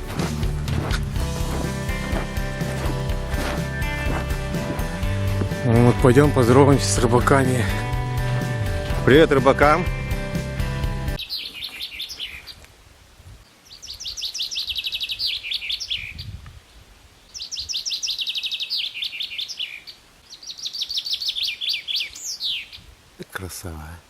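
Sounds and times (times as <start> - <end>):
songbird trilling: 11.2 - 12.6, 13.6 - 16.3, 17.3 - 22.8.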